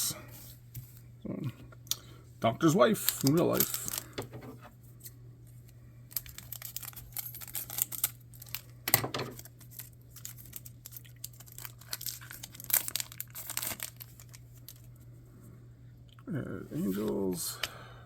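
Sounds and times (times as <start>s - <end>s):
faint steady hum: 0.0s - 18.0s
card wrapper crinkling and tearing: 2.9s - 4.3s, 6.1s - 15.0s.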